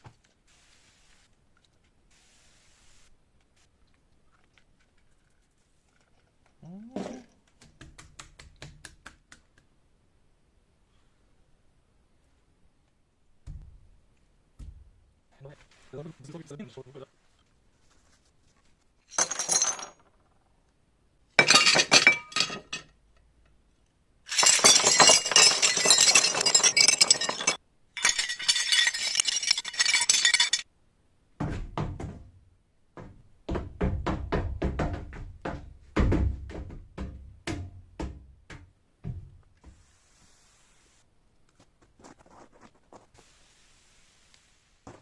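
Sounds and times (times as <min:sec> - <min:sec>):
dull knocks and thuds: 0:13.4 - 0:14.0, 0:14.6 - 0:15.1, 0:31.4 - 0:39.8
glass clinking: 0:21.4 - 0:22.9, 0:24.3 - 0:30.6
glass shards crunching and rattling: 0:24.3 - 0:30.6.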